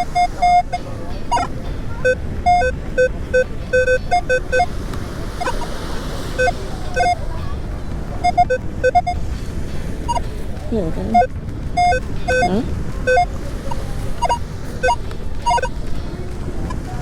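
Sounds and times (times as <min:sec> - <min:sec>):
metal detector beeping: 0:00.0 - 0:04.7, 0:05.3 - 0:05.8, 0:06.4 - 0:07.2, 0:08.2 - 0:09.2, 0:10.1 - 0:10.3, 0:11.1 - 0:15.8
surf: 0:00.0 - 0:17.0
wind: 0:00.0 - 0:17.0.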